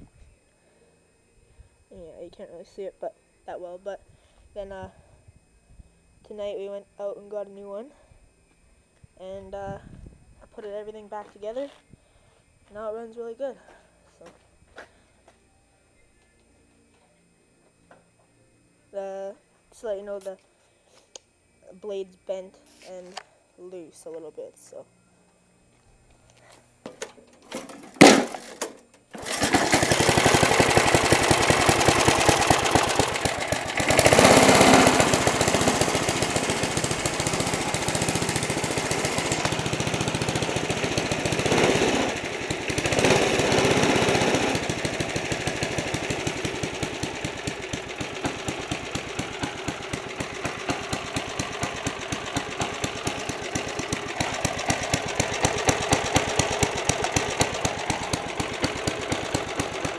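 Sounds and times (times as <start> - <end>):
lawn mower engine running: 26.8 - 59.9.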